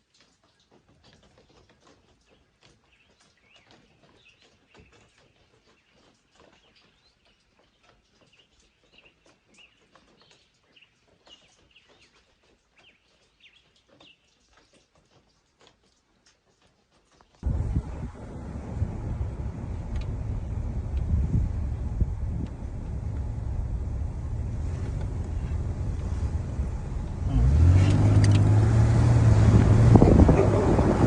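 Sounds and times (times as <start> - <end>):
light clicks: 27.8 - 28.6.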